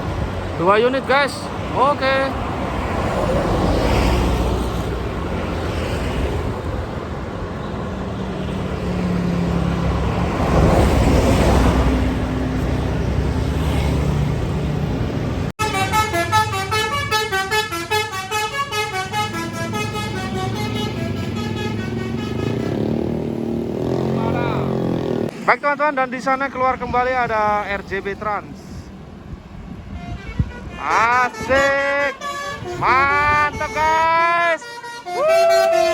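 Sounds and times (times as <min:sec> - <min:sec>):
buses passing: 0:00.0 - 0:35.9
musical bus horn tune: 0:15.6 - 0:23.2, 0:29.8 - 0:35.9.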